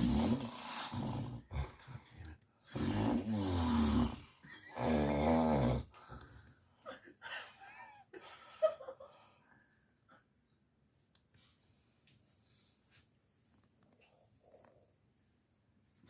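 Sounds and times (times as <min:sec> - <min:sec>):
person snoring: 0:00.0 - 0:01.9, 0:02.7 - 0:06.2.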